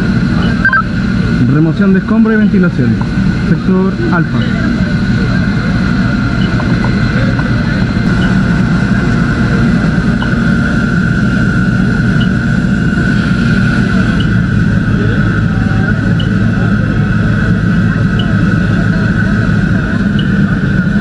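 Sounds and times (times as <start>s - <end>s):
engine running with high whine: 0.0s - 21.0s
faint short chirp: 0.5s - 0.9s.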